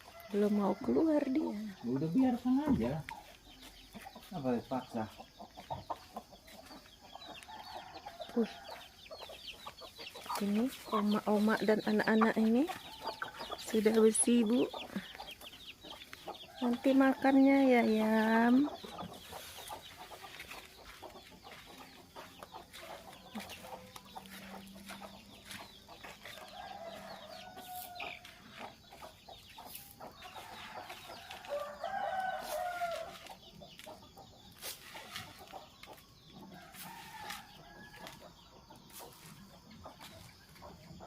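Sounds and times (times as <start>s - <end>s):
chickens clucking and calling: 0.0s - 41.0s.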